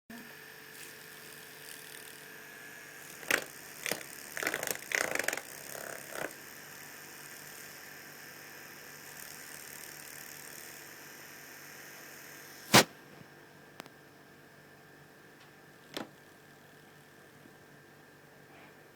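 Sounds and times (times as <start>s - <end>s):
electric fan humming: 0.1s - 18.9s
sharp loud click: 12.7s - 12.9s.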